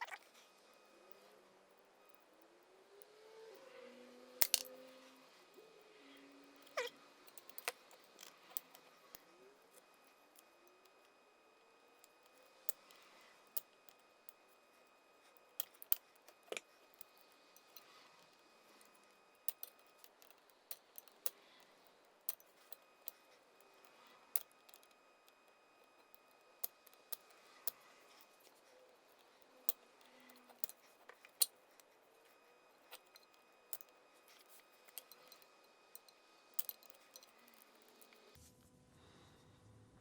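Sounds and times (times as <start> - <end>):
metallic clicks of pliers and ring: 4.4 - 5.2, 6.1 - 11.0, 15.2 - 38.4.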